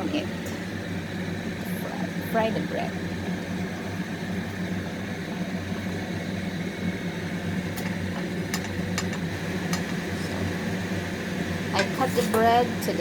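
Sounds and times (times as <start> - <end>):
kitchen exhaust fan humming: 0.0 - 13.0
bread frying ticks: 3.2 - 10.1.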